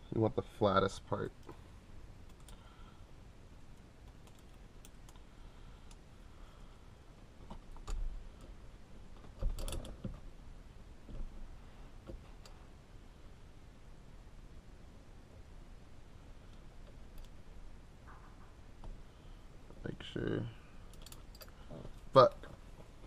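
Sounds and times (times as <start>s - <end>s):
small metal parts clicking and tapping: 9.2s - 10.2s, 20.9s - 21.6s.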